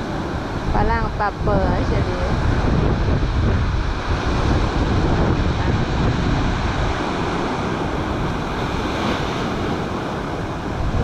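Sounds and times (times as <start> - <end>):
rough sea surf breaking: 0.0 - 11.0
wind buffeting microphone: 0.0 - 11.0.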